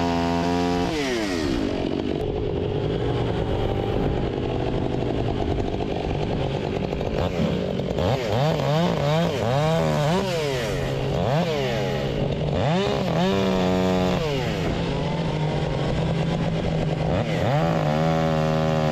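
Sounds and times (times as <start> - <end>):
chainsaw engine revving: 0.0 - 18.9.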